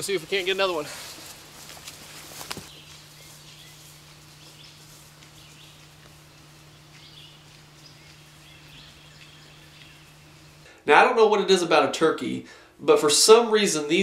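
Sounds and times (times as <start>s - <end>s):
small birds chirping: 0.0s - 10.7s
steady low hum: 0.0s - 12.9s.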